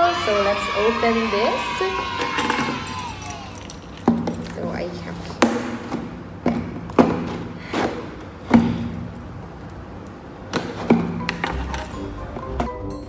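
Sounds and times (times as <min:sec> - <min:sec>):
box knocks and thuds: 0:05.2 - 0:09.4, 0:10.4 - 0:12.9.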